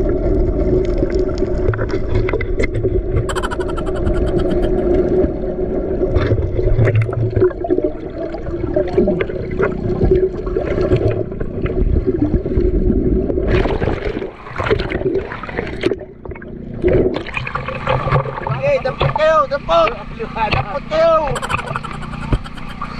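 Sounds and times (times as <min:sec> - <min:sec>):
water splashing against boat: 0:13.4 - 0:22.9
boat engine drone: 0:18.9 - 0:22.9.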